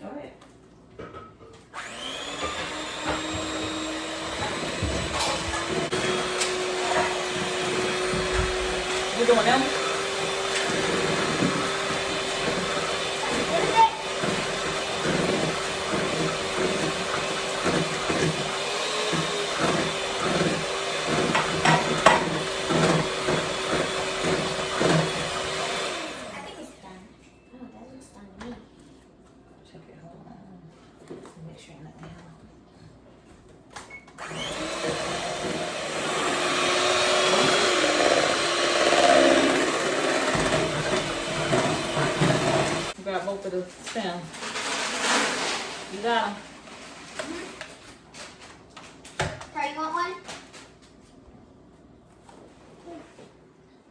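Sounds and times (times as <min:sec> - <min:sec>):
electric mixer beating batter: 0:01.8 - 0:26.8, 0:34.2 - 0:43.0.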